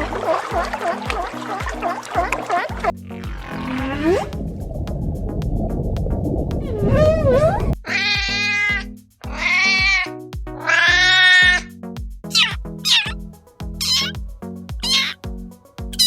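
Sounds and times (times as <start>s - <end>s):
background music with steady beat: 0.0s - 16.0s
cat meowing: 7.0s - 11.7s, 12.3s - 13.2s, 13.8s - 14.2s, 14.8s - 15.2s.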